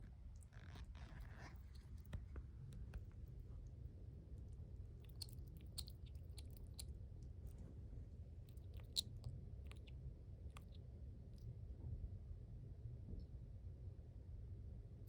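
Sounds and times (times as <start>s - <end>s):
pet crunching dry food: 0.4s - 7.6s, 8.4s - 10.7s.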